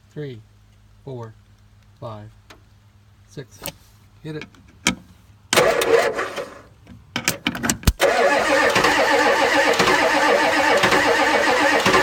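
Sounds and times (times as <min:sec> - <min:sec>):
diesel engine cranking: 0:05.5 - 0:12.0.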